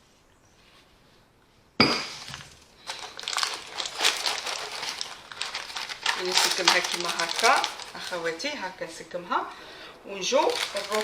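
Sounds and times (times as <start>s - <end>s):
utensil clinking and scraping in tin: 2.9s - 8.5s, 10.3s - 11.0s.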